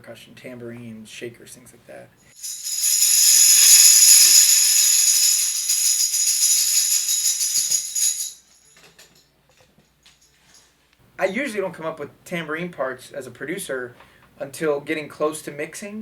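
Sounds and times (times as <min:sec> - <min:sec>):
tambourine shaken: 0:02.4 - 0:08.6.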